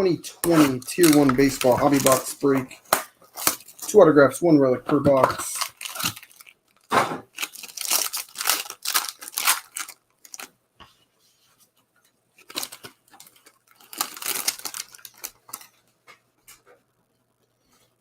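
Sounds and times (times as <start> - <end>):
wrapper tearing and crinkling: 0.4 - 3.9, 5.3 - 10.5, 12.4 - 15.7.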